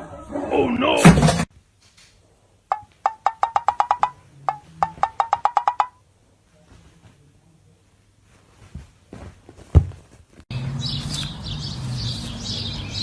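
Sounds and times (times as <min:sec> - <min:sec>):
rattling sharp knocks: 0:02.7 - 0:06.0.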